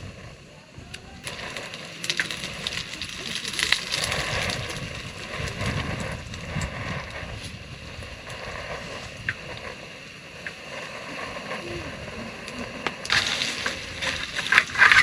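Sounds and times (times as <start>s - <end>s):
rice sizzling in a pan: 0.0s - 15.0s
stirring clicks and scrapes: 1.2s - 7.6s, 10.4s - 15.0s.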